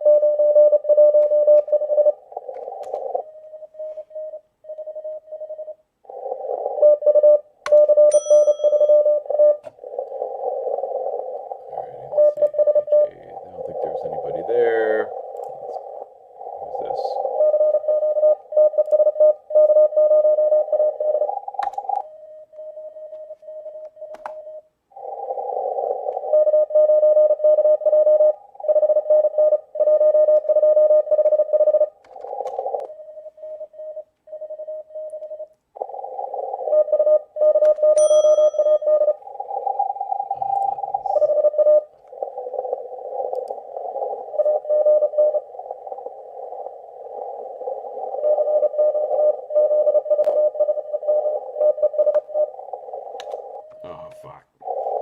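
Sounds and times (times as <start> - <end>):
morse code tones: 0.0 - 5.9, 6.6 - 24.7, 36.6 - 55.0
clean steady tone: 0.0 - 55.0
receiver hiss: 8.9 - 35.5, 38.6 - 55.0.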